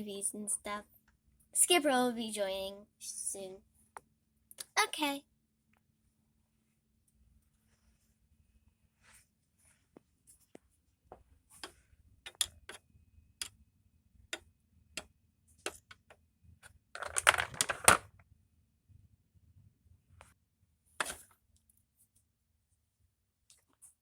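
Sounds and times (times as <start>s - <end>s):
plastic toys clicking and tapping: 11.6s - 13.6s, 14.3s - 18.1s.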